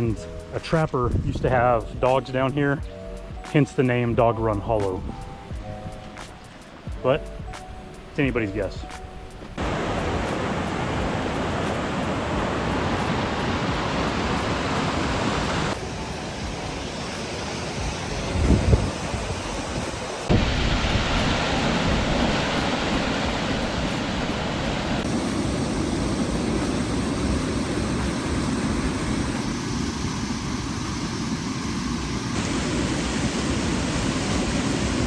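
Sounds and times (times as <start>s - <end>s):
creek water rushing: 9.6s - 35.0s.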